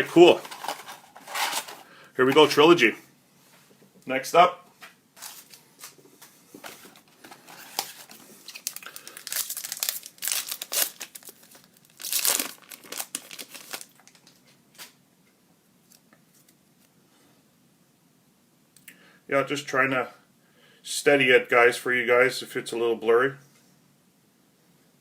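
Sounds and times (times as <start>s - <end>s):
plastic wrapping crinkling and tearing: 0.2s - 1.8s, 6.7s - 15.0s.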